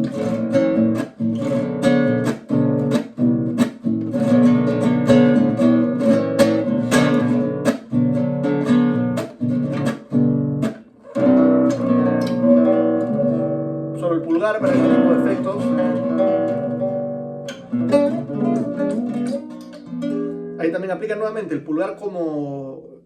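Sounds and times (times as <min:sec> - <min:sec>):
acoustic guitar strumming: 0:00.0 - 0:21.6.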